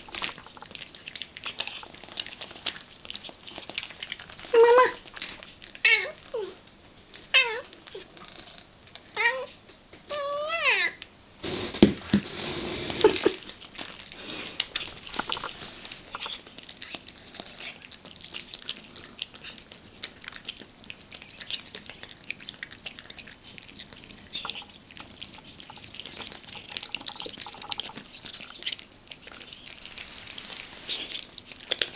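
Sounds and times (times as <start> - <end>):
cat eating with wet crunching: 0.0 - 10.4, 11.0 - 31.9.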